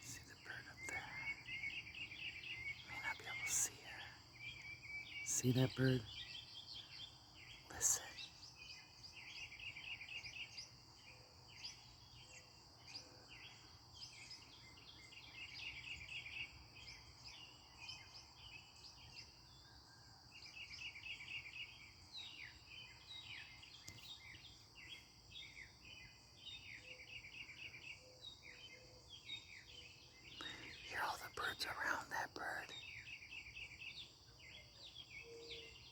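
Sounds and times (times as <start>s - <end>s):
mockingbird singing: 0.0s - 10.6s.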